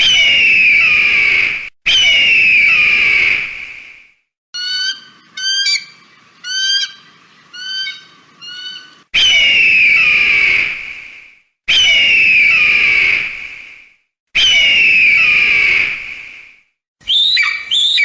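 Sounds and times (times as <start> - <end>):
eagle calls: 4.6 - 10.1, 17.0 - 18.0
eagle screaming: 4.6 - 10.7, 17.0 - 18.0.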